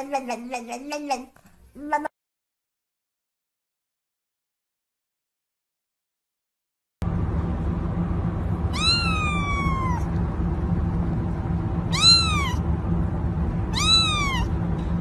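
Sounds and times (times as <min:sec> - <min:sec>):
steady low rumble: 0:07.0 - 0:15.0
cat meowing: 0:08.7 - 0:10.1, 0:11.9 - 0:12.6, 0:13.7 - 0:14.6.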